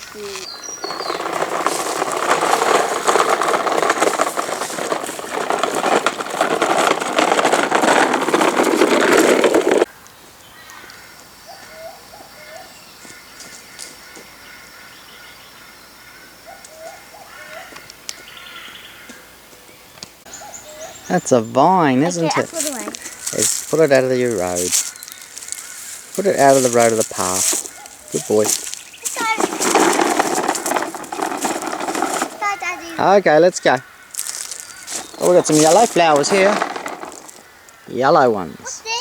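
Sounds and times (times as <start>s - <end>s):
birds calling: 0.0s - 8.1s, 10.2s - 39.0s
loud crackling rustle: 0.0s - 9.9s, 22.0s - 33.1s, 33.8s - 37.9s.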